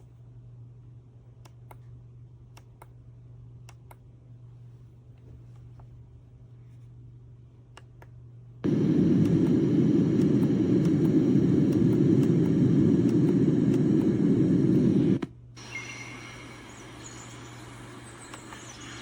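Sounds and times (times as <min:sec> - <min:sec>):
low rumbling noise: 0:08.6 - 0:19.0.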